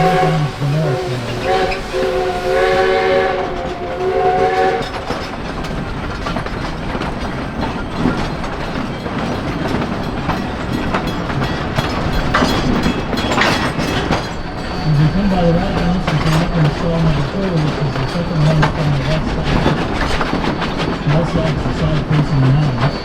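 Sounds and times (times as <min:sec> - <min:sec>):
steam whistle: 0:00.0 - 0:05.3
train wheels clattering over rail joints: 0:00.0 - 0:23.0.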